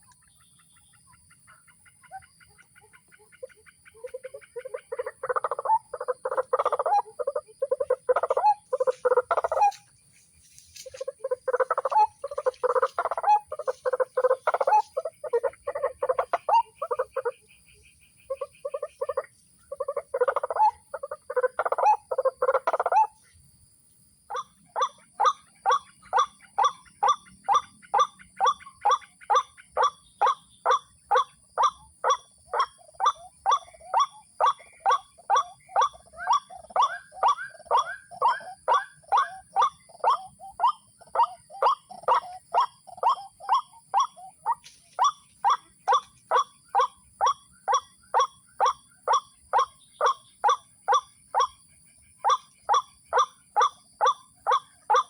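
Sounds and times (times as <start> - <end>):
waterhen calling: 0.8 - 9.9, 10.7 - 17.4, 32.0 - 51.5.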